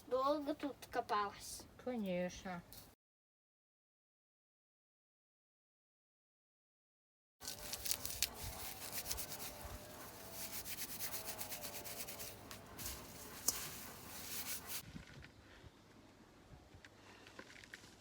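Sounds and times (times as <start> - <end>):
leaves and stems rustling: 7.4 - 14.8.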